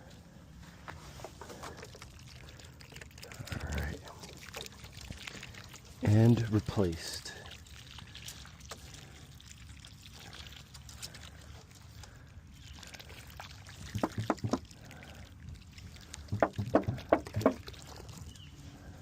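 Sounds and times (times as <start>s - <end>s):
dull knocks: 14.0s - 14.6s, 16.3s - 17.6s.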